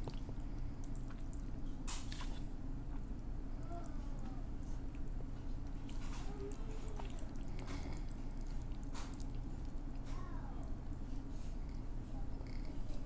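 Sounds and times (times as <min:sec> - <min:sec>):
person chewing and smacking: 0:00.0 - 0:13.0
sharp wet clicks: 0:04.8 - 0:11.3.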